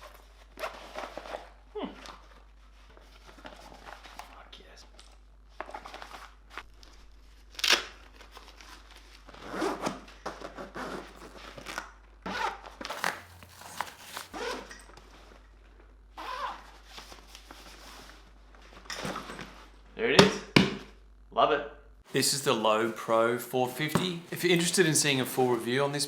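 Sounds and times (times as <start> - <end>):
packaging rustling and tearing: 12.7 - 14.6.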